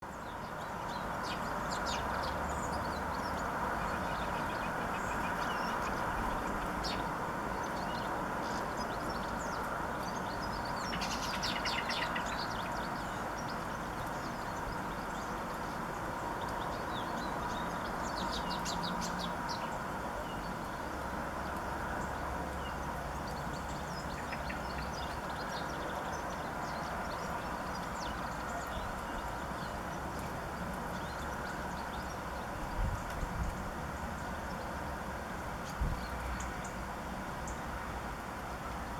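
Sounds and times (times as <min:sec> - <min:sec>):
small birds chirping: 0:00.0 - 0:21.2
birds twittering: 0:00.1 - 0:21.0.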